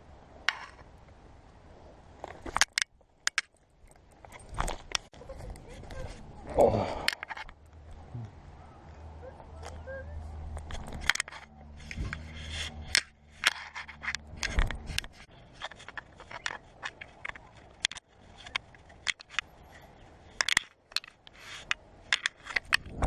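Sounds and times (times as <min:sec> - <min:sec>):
clicks knocks and scrapes: 0:10.5 - 0:23.0.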